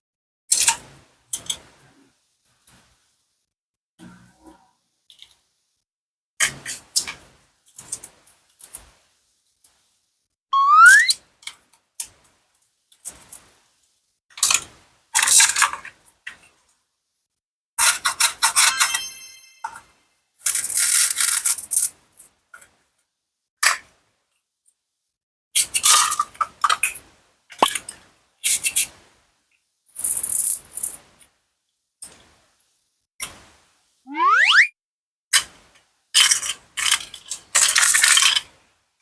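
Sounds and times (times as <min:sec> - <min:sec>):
ringing sound effect: 0:10.6 - 0:11.2, 0:34.1 - 0:34.7.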